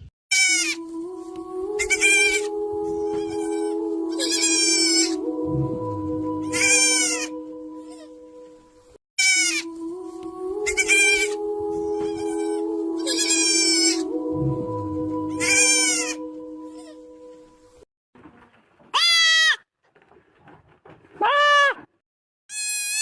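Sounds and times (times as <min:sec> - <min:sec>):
goat kid bleating: 0:00.3 - 0:00.8, 0:01.8 - 0:02.5, 0:03.1 - 0:05.2, 0:06.5 - 0:07.3, 0:09.2 - 0:09.7, 0:10.6 - 0:11.4, 0:12.0 - 0:14.0, 0:15.4 - 0:16.2, 0:18.9 - 0:19.6, 0:21.2 - 0:21.8, 0:22.5 - 0:23.0
background music with held tones: 0:00.8 - 0:17.8.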